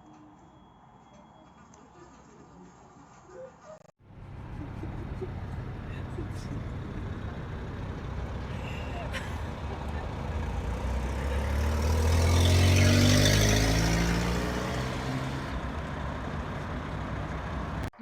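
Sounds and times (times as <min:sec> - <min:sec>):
vehicle driving past: 0:04.0 - 0:17.9.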